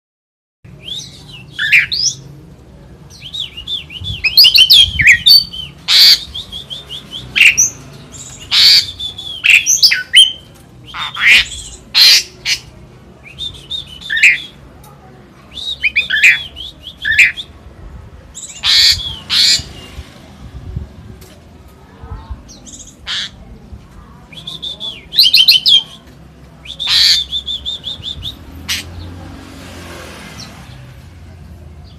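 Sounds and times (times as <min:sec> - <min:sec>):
songbird singing: 0:00.7 - 0:02.4, 0:03.1 - 0:14.7, 0:15.5 - 0:17.6, 0:24.2 - 0:29.3.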